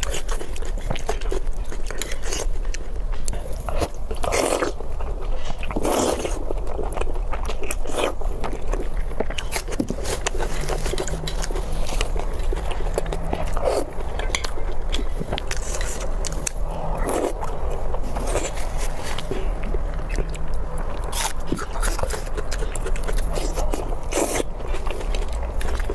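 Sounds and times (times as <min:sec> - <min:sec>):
person chewing food: 0:00.0 - 0:25.9.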